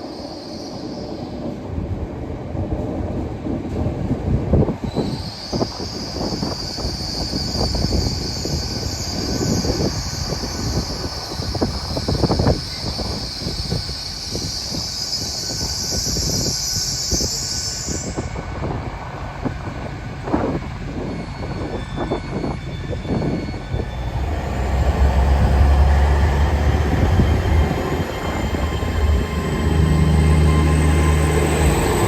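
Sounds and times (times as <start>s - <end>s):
locomotive engine drone: 18.0s - 32.0s.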